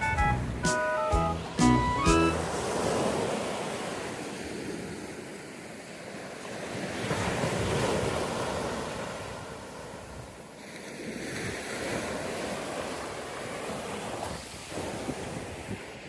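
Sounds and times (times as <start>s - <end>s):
sea waves washing in: 0.0s - 16.0s
wind blowing across microphone: 14.0s - 16.0s.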